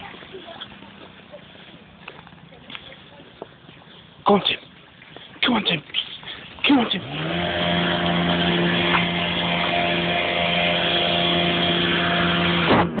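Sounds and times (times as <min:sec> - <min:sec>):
motor running: 0:07.0 - 0:12.9.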